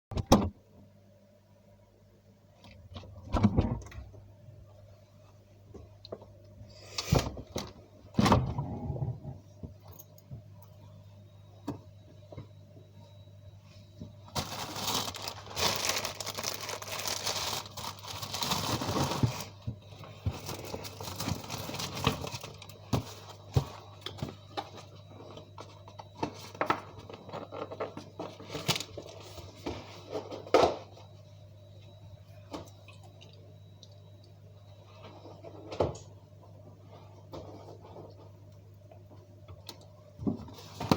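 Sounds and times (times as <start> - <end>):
food packaging crinkling and tearing: 14.3 - 19.6, 20.3 - 23.4.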